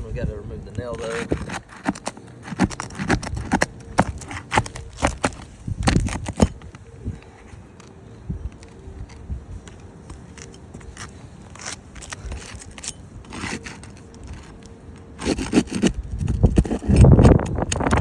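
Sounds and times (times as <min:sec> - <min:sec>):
scraping and crunching of shingle grit: 0:00.7 - 0:08.0, 0:08.6 - 0:18.0
clicks and scrapes: 0:00.9 - 0:06.8, 0:10.1 - 0:18.0.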